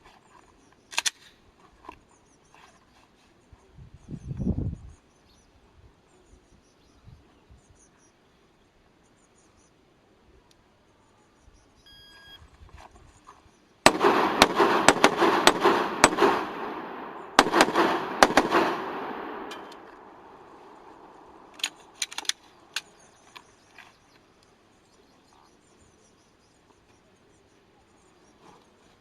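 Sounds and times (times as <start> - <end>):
shot timer beep: 11.9 - 12.4
rapid pistol fire: 13.9 - 22.0
light clicks: 19.1 - 24.5.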